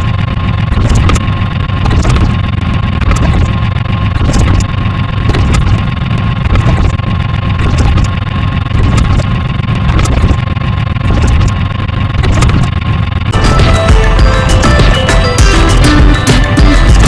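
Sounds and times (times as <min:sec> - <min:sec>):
low rumble: 0:00.0 - 0:17.0
steady tone: 0:12.7 - 0:17.0.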